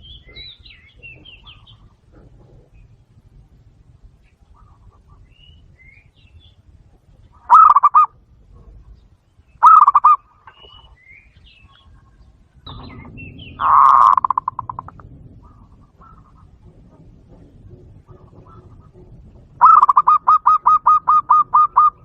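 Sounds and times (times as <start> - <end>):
dove cooing: 7.2 - 9.0, 9.6 - 10.9, 11.6 - 22.0.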